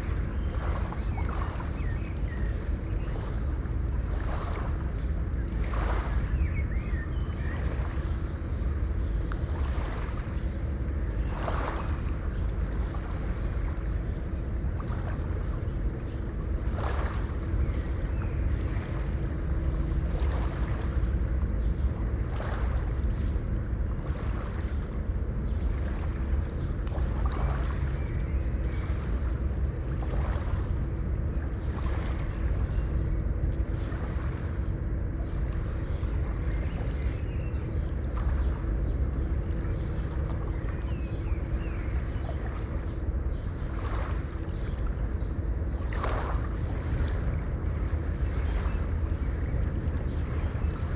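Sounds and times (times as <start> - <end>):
faint steady hum: 0.0 - 50.9
water splashing: 14.6 - 50.9.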